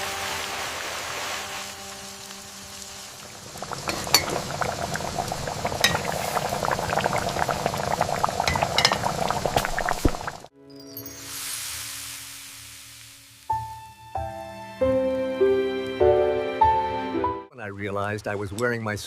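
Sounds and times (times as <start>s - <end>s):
pot of food bubbling: 2.8s - 10.5s
spoon clinking against pot: 3.9s - 4.4s.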